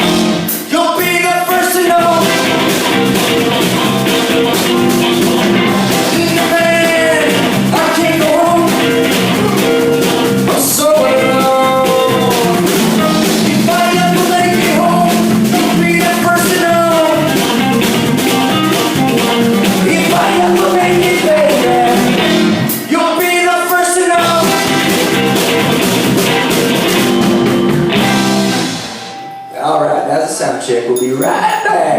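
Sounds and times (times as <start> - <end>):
live rock band: 0.0 - 29.6
person singing: 0.5 - 2.8, 5.9 - 17.6, 19.6 - 24.9.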